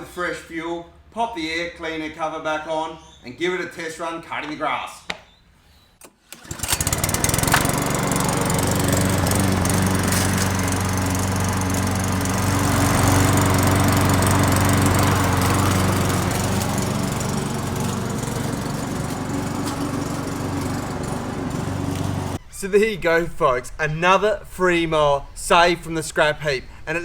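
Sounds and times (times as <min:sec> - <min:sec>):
lawn mower engine running: 0:06.3 - 0:22.4.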